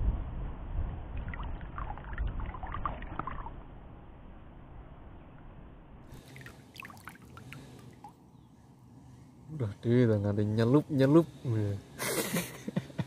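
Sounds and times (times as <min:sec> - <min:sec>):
low rumble: 0:00.0 - 0:06.2
water sloshing and splashing: 0:01.2 - 0:03.7, 0:06.1 - 0:08.2.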